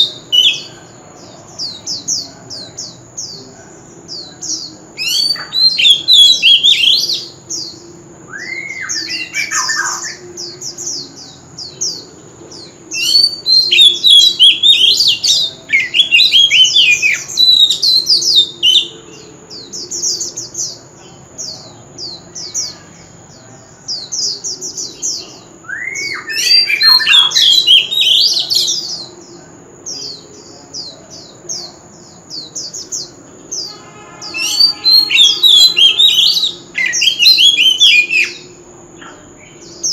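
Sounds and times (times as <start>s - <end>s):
bird singing whistles: 8.3s - 10.2s, 13.0s - 18.9s, 25.6s - 28.8s, 33.6s - 38.5s.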